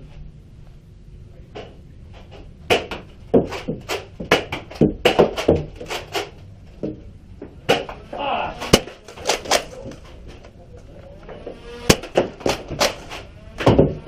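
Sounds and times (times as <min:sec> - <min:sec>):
sharp knocks and clacks: 0:01.5 - 0:08.0.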